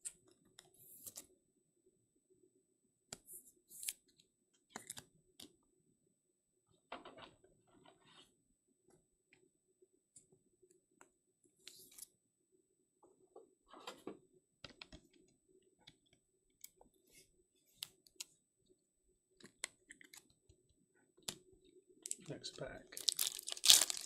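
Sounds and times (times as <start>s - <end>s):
faint clicks and handling noises: 19.4s - 22.3s.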